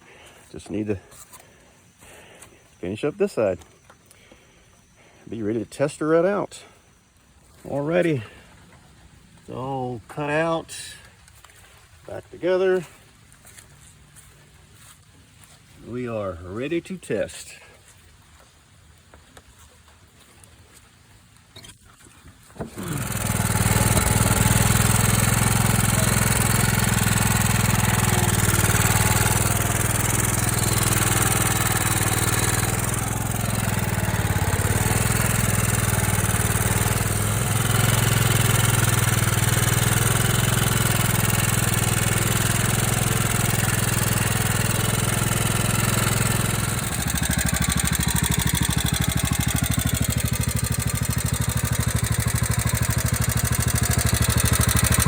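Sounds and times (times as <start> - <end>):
lawn mower engine running: 7.4 - 14.3, 21.6 - 55.0.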